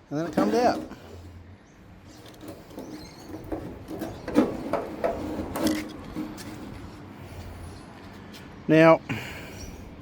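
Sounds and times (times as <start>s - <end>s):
light metal clunks and rattles: 2.1s - 7.0s.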